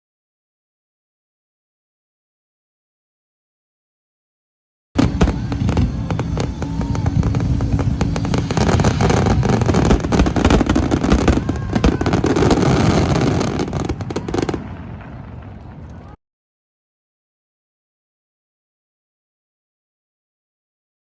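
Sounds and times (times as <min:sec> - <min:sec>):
fireworks booming and crackling: 0:05.0 - 0:16.2.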